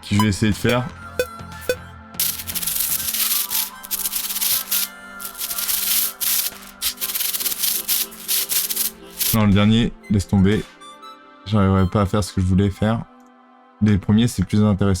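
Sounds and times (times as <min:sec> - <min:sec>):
scratchy rubbing or shaking: 0:02.2 - 0:09.4.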